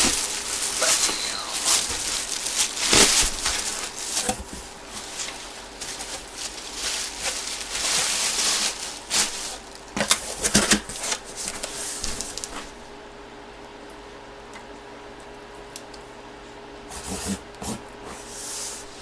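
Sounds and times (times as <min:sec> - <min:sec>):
packaging rustling and crinkling: 0:00.0 - 0:12.8
faint steady hum: 0:00.0 - 0:19.0.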